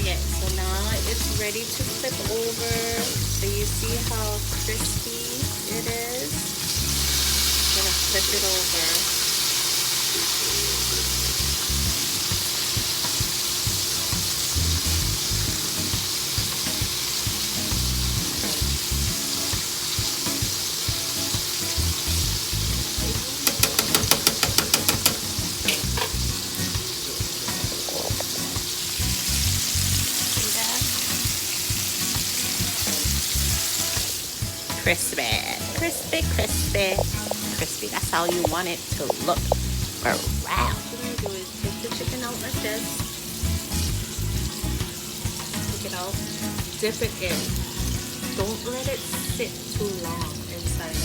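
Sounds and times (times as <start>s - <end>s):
chicken deep-frying in oil: 0.0s - 51.0s
sharp clicks: 23.5s - 25.8s.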